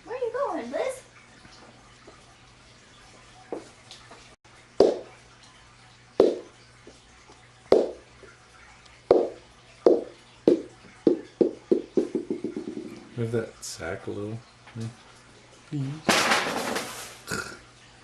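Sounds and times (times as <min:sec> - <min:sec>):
rubber ball bouncing on hard floor: 0:04.8 - 0:05.1, 0:06.2 - 0:06.4, 0:07.7 - 0:08.0, 0:09.1 - 0:13.0.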